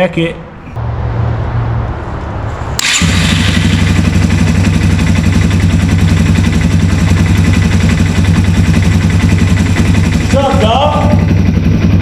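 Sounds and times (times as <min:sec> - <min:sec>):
motorcycle engine starting and idling: 0:02.8 - 0:12.0.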